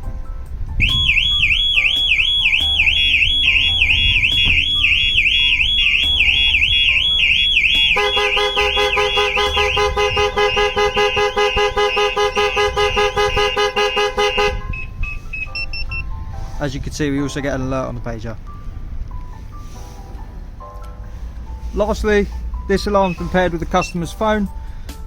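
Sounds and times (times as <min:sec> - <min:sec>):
vehicle horn honking: 0:00.8 - 0:16.1, 0:22.9 - 0:24.1
warbling alarm siren: 0:00.8 - 0:16.1, 0:23.0 - 0:23.5.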